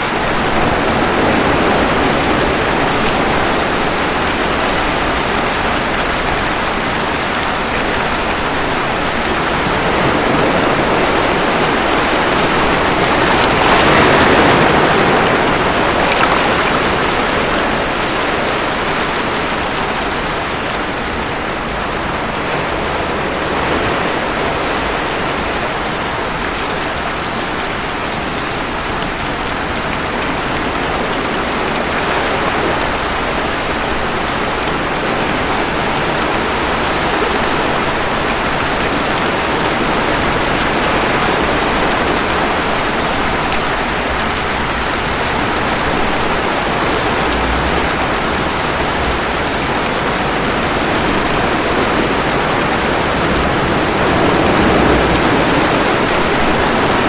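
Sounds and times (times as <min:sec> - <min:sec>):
ocean waves washing ashore: 0:00.0 - 0:57.0
steady rain: 0:00.0 - 0:57.0.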